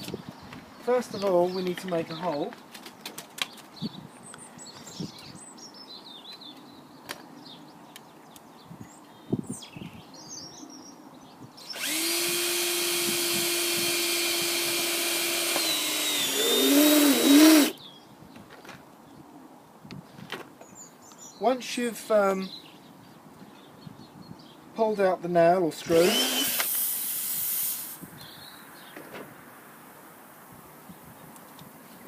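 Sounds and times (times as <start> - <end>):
faint birds chirping: 0.0 - 26.4, 28.0 - 32.0
power drill drilling into rubber: 11.6 - 17.8, 25.9 - 28.0.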